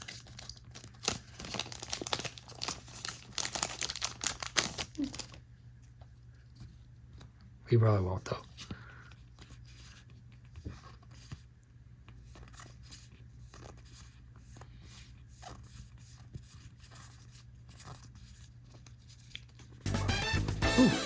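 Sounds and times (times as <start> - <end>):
card pack crinkling and tearing: 0.0 - 5.4.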